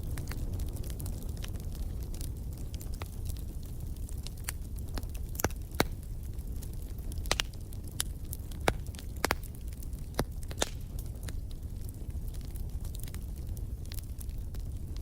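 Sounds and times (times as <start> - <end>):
low rumble of flames: 0.0 - 15.0
wood fire pops and snaps: 0.0 - 15.0.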